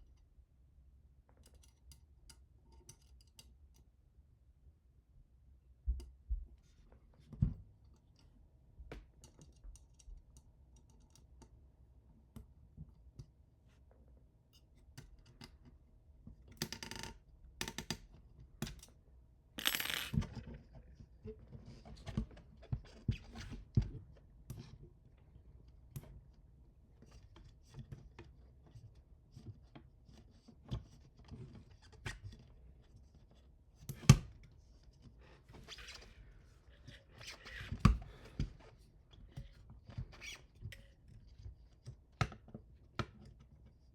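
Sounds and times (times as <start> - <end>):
parts scraping: 19.6 - 20.2.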